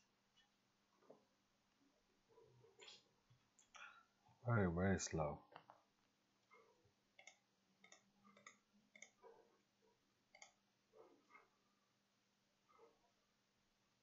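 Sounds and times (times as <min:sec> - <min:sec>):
computer mouse clicks: 0:07.2 - 0:09.3, 0:10.3 - 0:10.6.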